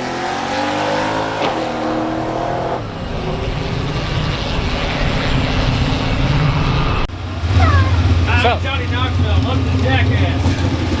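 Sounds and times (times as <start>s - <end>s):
race car engine accelerating: 4.9s - 11.0s.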